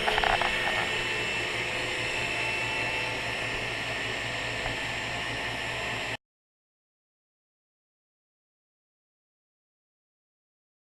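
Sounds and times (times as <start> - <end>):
milling machine motor whirring: 0.0 - 6.2.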